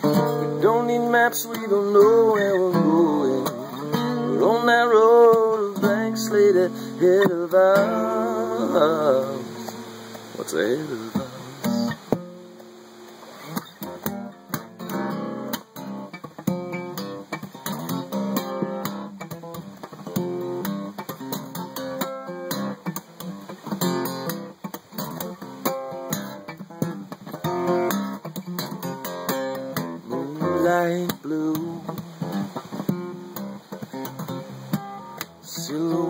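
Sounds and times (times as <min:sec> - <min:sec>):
acoustic guitar playing: 0:00.0 - 0:36.0.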